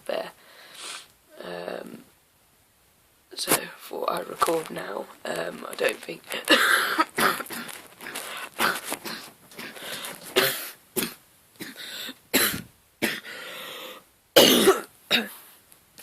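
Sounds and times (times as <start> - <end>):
man coughing: 6.5 - 7.7, 10.4 - 13.3, 14.4 - 15.4
man clearing his throat: 14.4 - 15.4.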